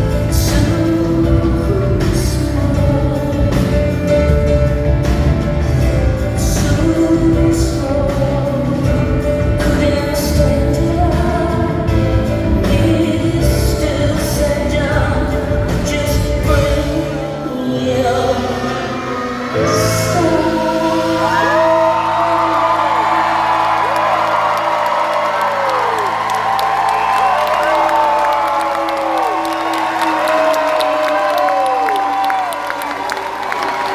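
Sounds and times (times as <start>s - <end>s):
woman singing: 0.0s - 24.0s
full band playing: 0.0s - 33.9s.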